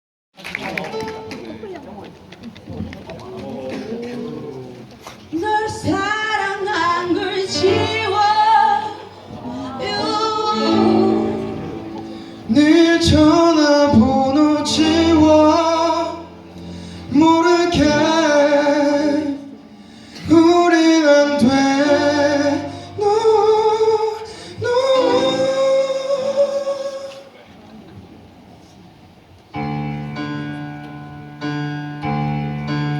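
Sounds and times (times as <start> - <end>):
instrumental accompaniment: 0.8 - 2.3, 29.5 - 32.9
woman singing pop ballad: 5.4 - 11.4.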